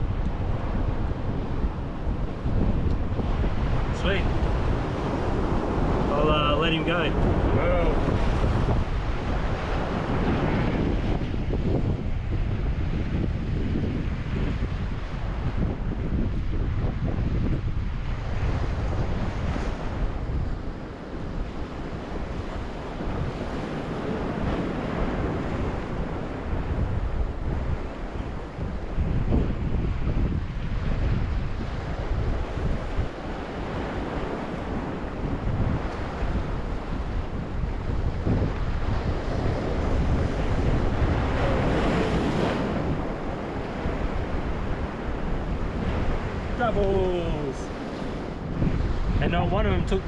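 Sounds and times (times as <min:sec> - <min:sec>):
surf washing onto shore: 0:00.0 - 0:50.0
wind buffeting microphone: 0:00.0 - 0:50.0.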